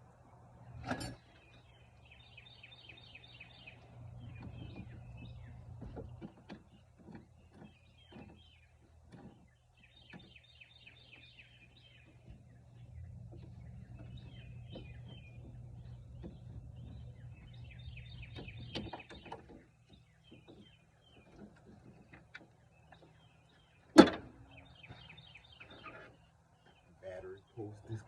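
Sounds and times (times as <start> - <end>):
birds chirping: 0.0 - 28.0
steady low hum: 10.9 - 19.0.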